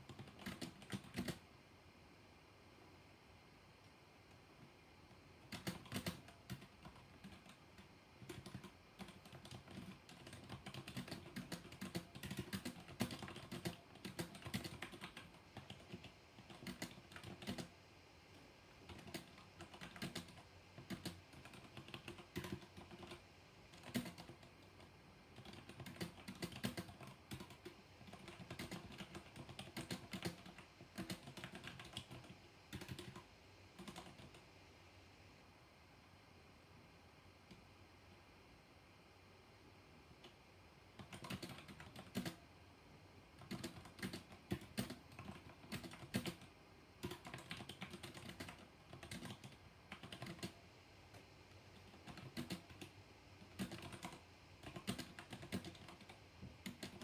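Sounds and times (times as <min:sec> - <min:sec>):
mechanical keyboard key clacks: 0:43.4 - 0:46.4.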